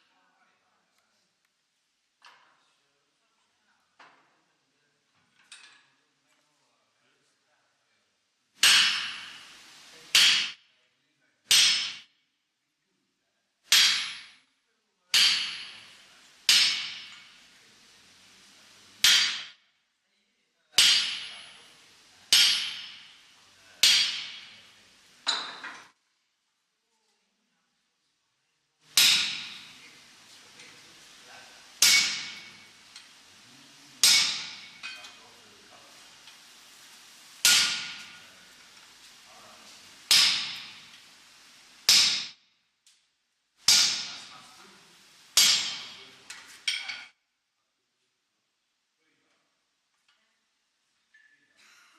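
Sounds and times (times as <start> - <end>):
hammer striking iron on anvil: 8.6 - 10.6, 11.5 - 12.1, 13.7 - 14.4, 15.1 - 17.4, 19.0 - 19.6, 20.8 - 21.7, 22.3 - 25.7, 28.9 - 29.9, 31.8 - 33.1, 34.0 - 35.2, 37.4 - 38.3, 40.1 - 41.0, 41.9 - 42.4, 43.7 - 44.4, 45.4 - 47.0.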